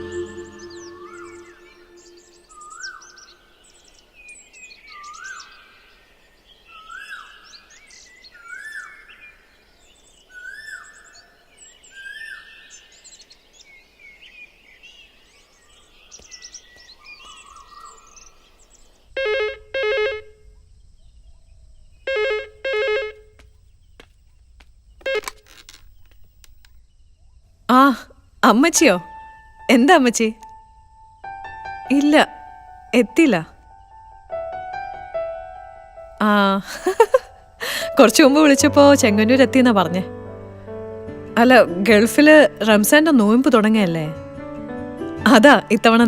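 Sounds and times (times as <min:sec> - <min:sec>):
bird rising whistled call: 0:00.0 - 0:03.6
birds chirping: 0:00.0 - 0:19.1, 0:36.0 - 0:46.0.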